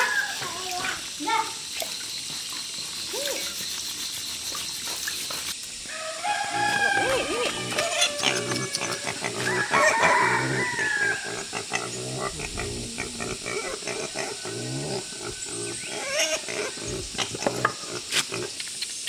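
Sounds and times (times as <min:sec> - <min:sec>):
pig grunting: 0:07.0 - 0:18.6.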